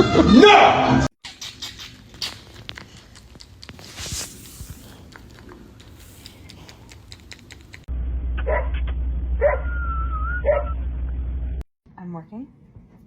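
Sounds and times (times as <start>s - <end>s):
steady low hum: 4.9s - 11.6s
dog yelping and whining: 9.4s - 10.8s.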